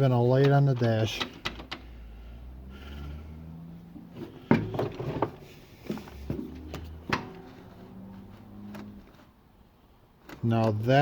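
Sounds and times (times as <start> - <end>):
sharp clicks and clunks: 0.0 - 2.0, 4.1 - 7.7, 10.2 - 11.0.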